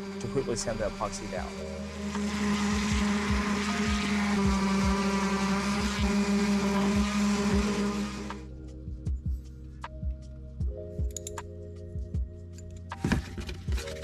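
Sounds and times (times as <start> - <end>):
electric palm sander buzzing: 0.0 - 8.5.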